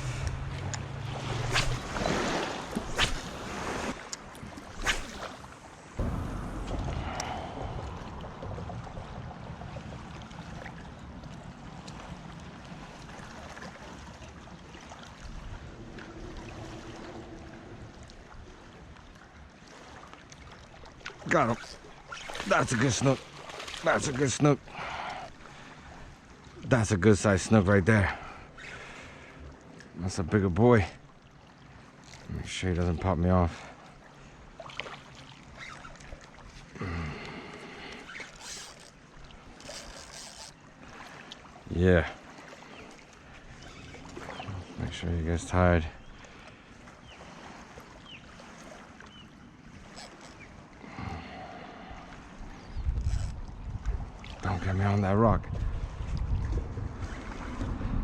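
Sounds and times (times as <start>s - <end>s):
water washing and splashing: 0.0s - 26.1s
shoreline water washing: 0.0s - 30.0s, 30.8s - 58.0s
wind: 0.0s - 58.0s
brief low-pitched sound: 6.0s - 9.5s.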